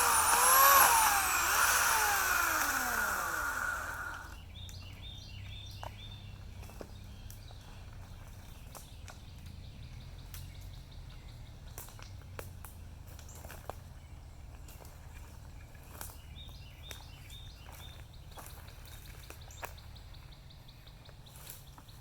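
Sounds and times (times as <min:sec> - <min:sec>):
electric chainsaw motor whining: 0:00.0 - 0:04.4.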